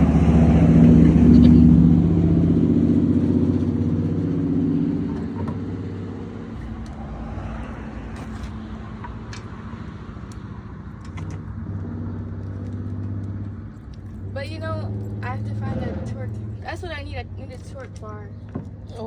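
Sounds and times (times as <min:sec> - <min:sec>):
car engine running: 0:00.0 - 0:19.0.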